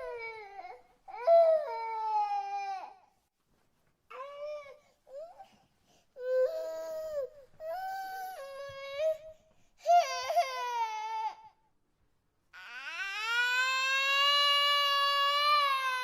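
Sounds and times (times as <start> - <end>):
infant crying: 6.2 - 11.6, 12.6 - 16.0.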